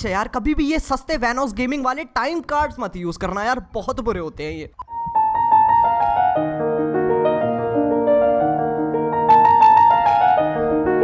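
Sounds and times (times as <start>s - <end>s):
piano melody over soft chords: 4.9s - 11.0s.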